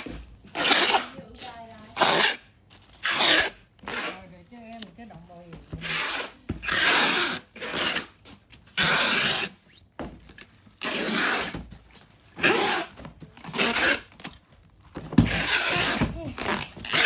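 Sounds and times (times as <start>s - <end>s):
rasping rubbing strokes: 8.8s - 9.8s.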